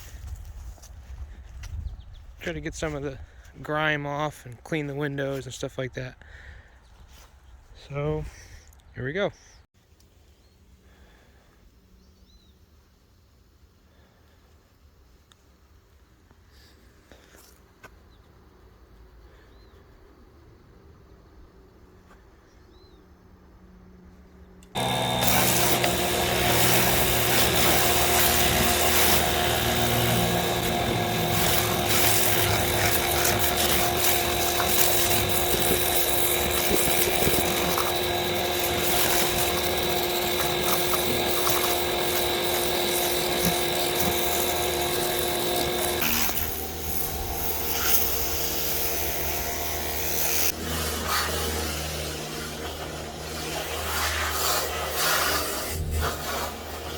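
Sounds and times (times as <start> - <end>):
pressure washer whine: 24.6 - 56.9
rough machine noise: 24.6 - 56.9
spray hissing: 24.8 - 56.9.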